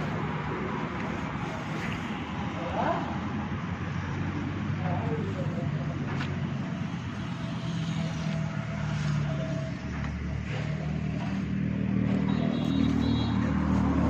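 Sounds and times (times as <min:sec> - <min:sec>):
tractor diesel engine running: 0:05.5 - 0:14.0.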